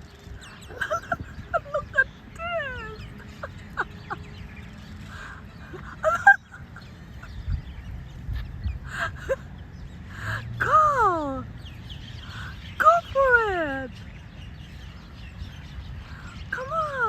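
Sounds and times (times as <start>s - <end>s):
ducks and fowl calling: 0.0s - 7.5s.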